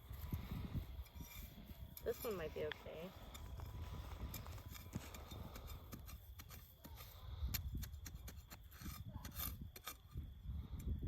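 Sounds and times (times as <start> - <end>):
dry soil scraping and crackling: 0.0 - 11.0.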